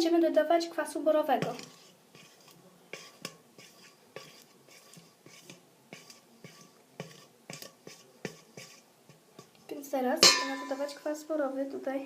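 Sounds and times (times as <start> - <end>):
utensil clinking against bowl: 10.2 - 11.0.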